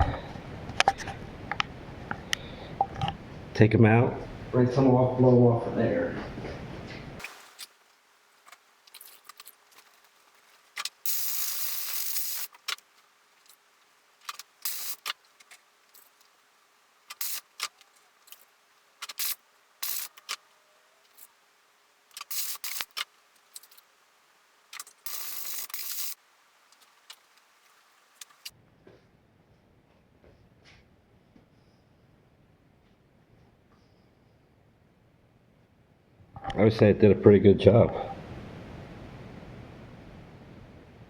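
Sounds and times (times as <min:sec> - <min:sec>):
air blow gun hissing: 0:10.8 - 0:12.6, 0:14.6 - 0:15.1, 0:17.1 - 0:17.7, 0:19.0 - 0:20.3, 0:22.2 - 0:23.0, 0:25.0 - 0:26.2.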